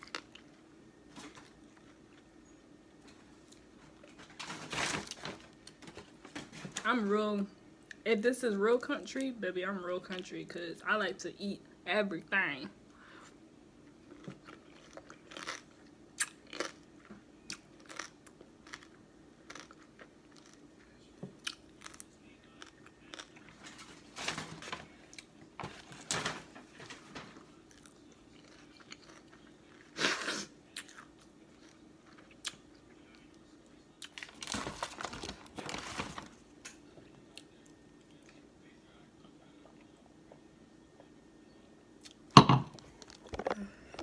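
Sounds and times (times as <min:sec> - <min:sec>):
chewing and crunching seafood: 0:00.0 - 0:00.5, 0:13.9 - 0:24.0, 0:27.6 - 0:30.0, 0:30.7 - 0:33.4.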